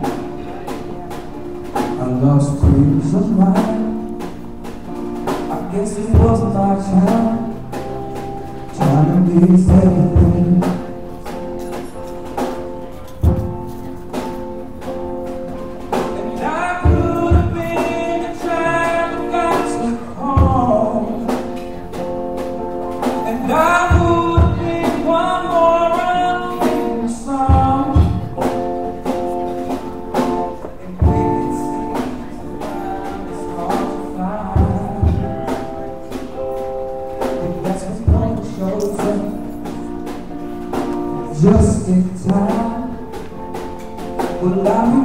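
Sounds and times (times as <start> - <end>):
live band playing soul song: 0.0 - 45.0
person singing: 1.8 - 4.3, 5.3 - 11.1, 15.9 - 22.2, 23.1 - 45.0.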